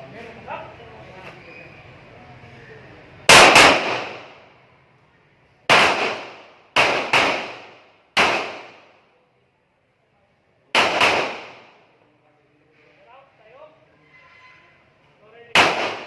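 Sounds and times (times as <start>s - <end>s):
handgun shots echoing: 3.3s - 4.3s, 5.7s - 8.8s, 10.8s - 11.7s, 15.6s - 16.0s.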